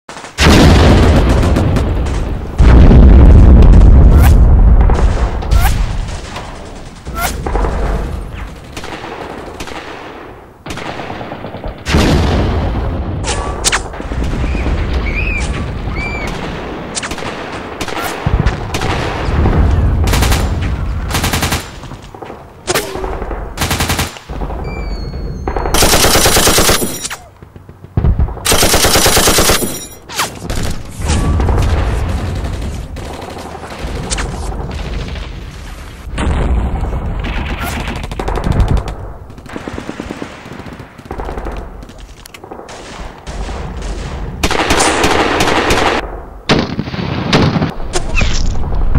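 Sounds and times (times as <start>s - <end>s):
gunshots and automatic fire: 0.1s - 48.9s
low booming rumbles: 0.4s - 9.2s, 18.3s - 23.7s, 30.5s - 39.7s.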